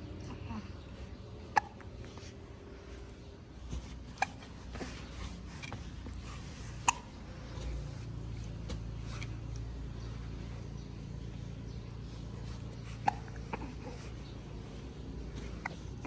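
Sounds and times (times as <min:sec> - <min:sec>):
baby hiccuping: 0:06.8 - 0:07.1, 0:13.0 - 0:14.0.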